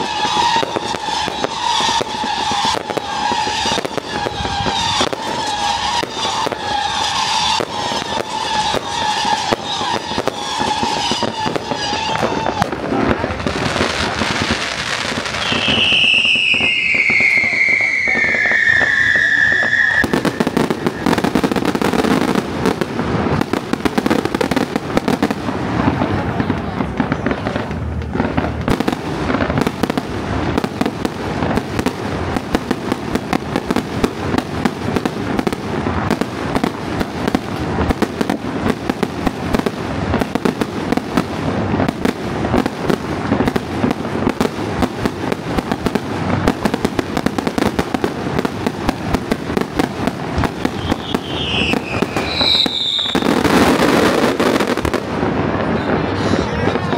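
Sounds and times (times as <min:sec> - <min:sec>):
fireworks and firecrackers banging: 0:00.0 - 0:56.9
whistle falling in pitch: 0:15.4 - 0:20.5, 0:50.8 - 0:53.2.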